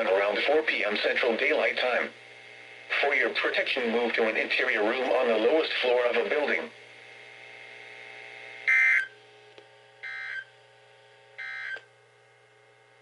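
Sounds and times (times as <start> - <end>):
faint steady hum: 0.0 - 13.0
buzzy digital data tones: 8.6 - 9.1, 10.0 - 10.5.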